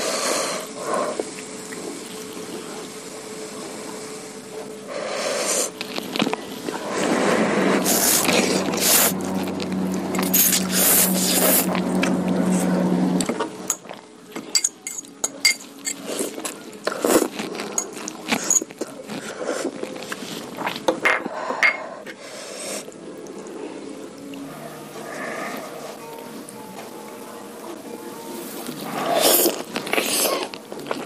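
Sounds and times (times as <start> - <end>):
hum with hiss: 0.0 - 13.7
spoon clinking against bowl: 14.5 - 16.0
chewing: 15.9 - 20.9, 28.6 - 31.0.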